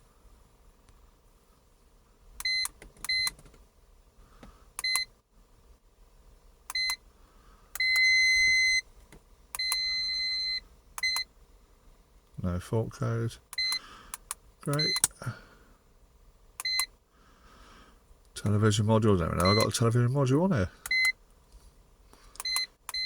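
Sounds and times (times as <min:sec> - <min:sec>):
long beeps: 0:14.7 - 0:15.2, 0:19.4 - 0:19.8
short high beeps: 0:19.4 - 0:19.8.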